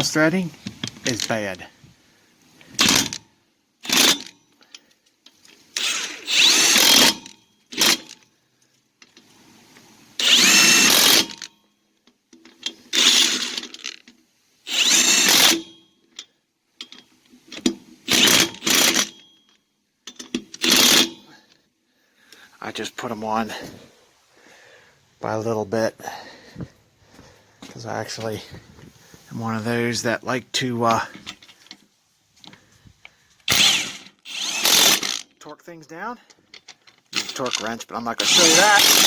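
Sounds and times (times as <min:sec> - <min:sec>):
impact driver bursts: 0:02.7 - 0:03.2, 0:05.7 - 0:08.1, 0:10.2 - 0:11.4, 0:13.0 - 0:13.7, 0:14.7 - 0:15.7, 0:18.1 - 0:19.2, 0:20.6 - 0:21.3, 0:33.5 - 0:35.3, 0:38.2 - 0:39.0.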